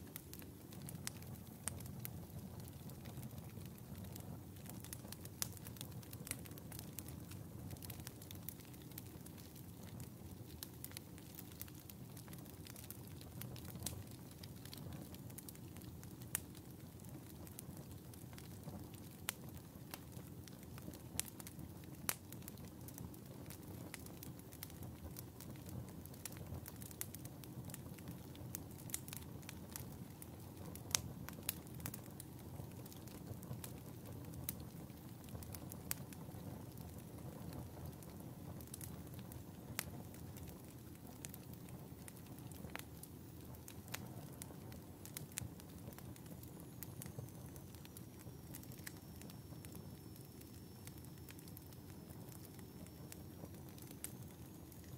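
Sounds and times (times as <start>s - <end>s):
fire crackling and popping: 0.0s - 54.9s
low rumble of flames: 0.0s - 54.9s.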